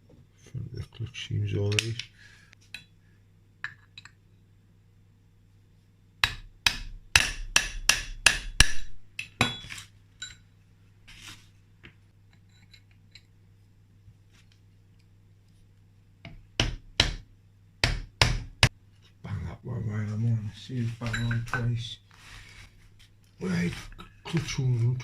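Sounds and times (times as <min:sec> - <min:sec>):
hammer tapping on metal: 0:06.2 - 0:09.6.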